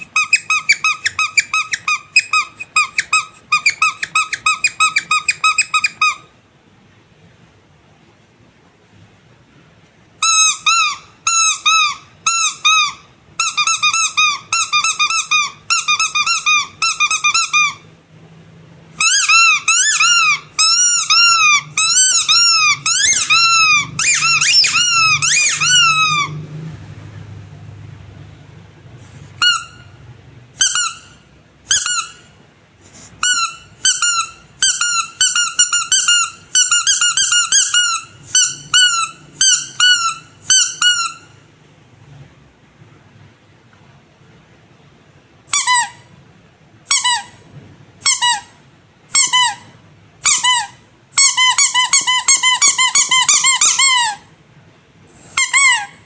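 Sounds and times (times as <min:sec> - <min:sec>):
rubber toys squeaking: 0:00.0 - 0:06.3, 0:10.2 - 0:17.9, 0:19.0 - 0:26.4, 0:29.2 - 0:29.9, 0:30.6 - 0:32.3, 0:33.1 - 0:41.4, 0:45.5 - 0:46.1, 0:46.9 - 0:47.4, 0:48.0 - 0:54.3, 0:55.2 - 0:56.0.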